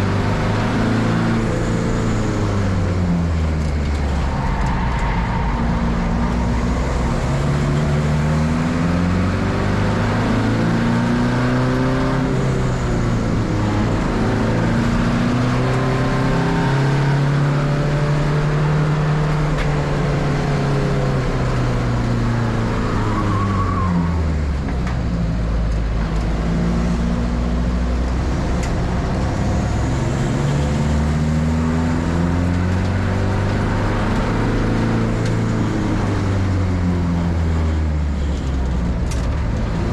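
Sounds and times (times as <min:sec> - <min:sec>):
race car engine revving: 0:00.0 - 0:24.6.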